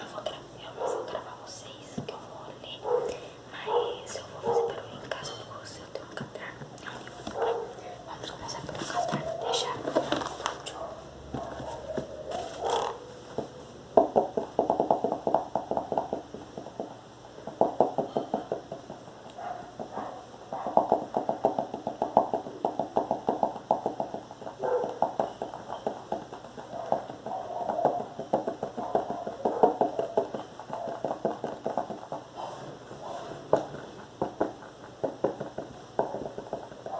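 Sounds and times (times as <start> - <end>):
fingers tapping on a notebook: 8.2 - 32.4, 33.4 - 36.9.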